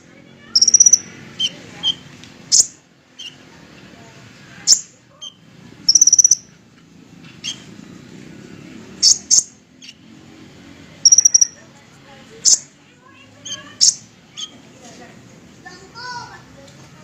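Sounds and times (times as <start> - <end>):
sunbird high chirps and trill: 0.4 - 3.5, 4.6 - 6.6, 7.2 - 7.8, 8.9 - 10.1, 11.0 - 11.6, 12.4 - 14.6.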